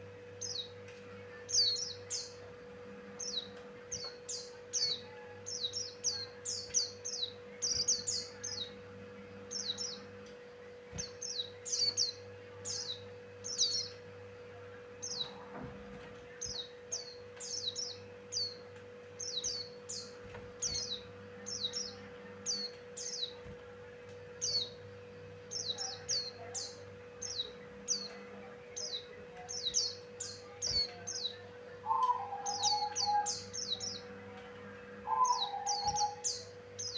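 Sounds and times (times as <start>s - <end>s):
steady low hum: 0.0s - 36.9s
lower warbling bird call: 31.8s - 33.8s, 35.0s - 36.5s.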